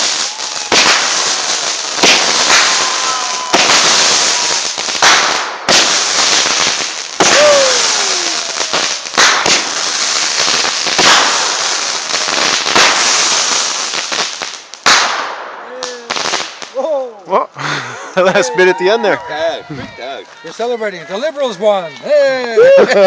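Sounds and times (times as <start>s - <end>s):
firework whistle: 0.0s - 13.8s
fireworks bangs: 0.0s - 17.1s
fireworks crackling: 0.0s - 23.0s.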